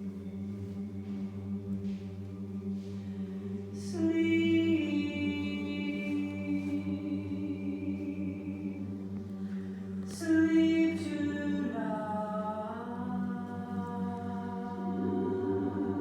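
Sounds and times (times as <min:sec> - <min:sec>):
choir singing held chords: 0:03.7 - 0:16.0.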